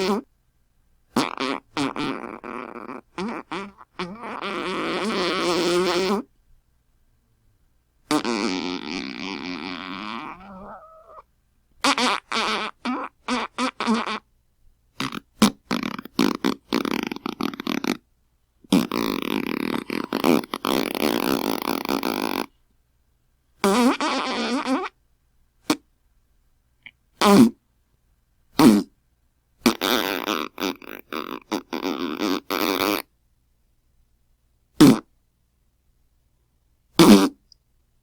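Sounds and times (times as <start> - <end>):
fart sound effects: 1.2 - 6.3, 8.1 - 11.2, 11.8 - 14.2, 15.0 - 18.0, 18.7 - 22.5, 37.0 - 37.4.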